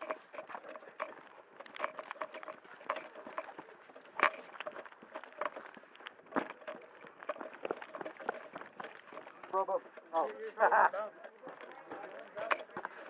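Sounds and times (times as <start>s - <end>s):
footsteps crunching on rough ground: 0.0s - 13.0s.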